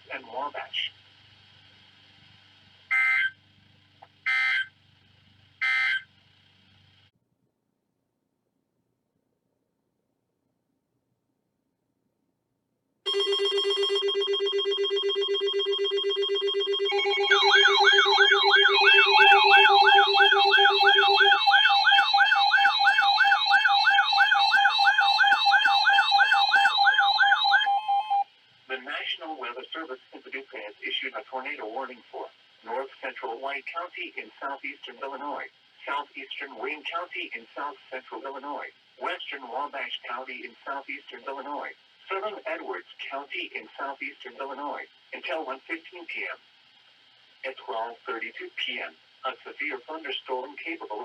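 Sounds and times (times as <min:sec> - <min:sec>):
receiver hiss and hum: 0:00.0 - 0:07.2, 0:13.0 - 0:51.0
warbling emergency alert siren: 0:02.9 - 0:03.4, 0:04.3 - 0:04.7, 0:05.6 - 0:06.1, 0:13.1 - 0:28.3
buzzy data tone bursts: 0:14.4 - 0:32.0.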